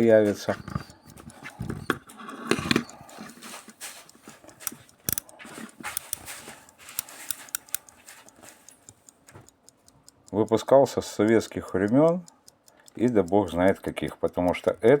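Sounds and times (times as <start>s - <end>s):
clicks and knocks of handling: 0.0s - 9.6s
alarm clock ticking: 0.0s - 15.0s.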